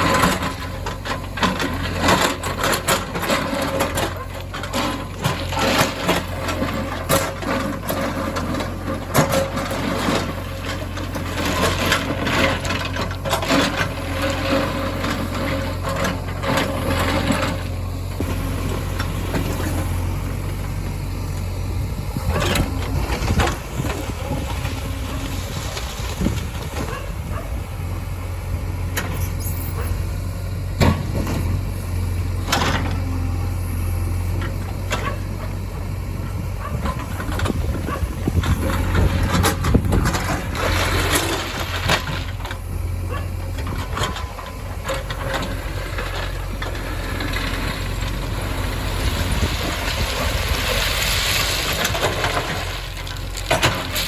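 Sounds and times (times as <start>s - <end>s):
diesel engines running: 0.0s - 54.0s.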